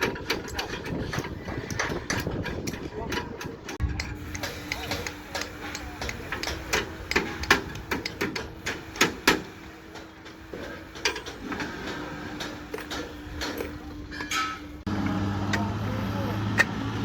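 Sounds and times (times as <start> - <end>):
sharp knocks and clicks: 0.0 - 9.4.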